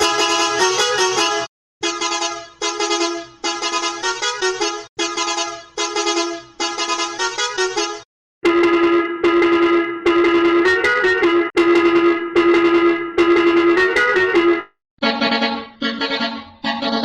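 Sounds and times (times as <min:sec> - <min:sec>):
musical bus horn tooting: 0:00.0 - 0:08.0, 0:10.6 - 0:11.2, 0:13.8 - 0:14.4.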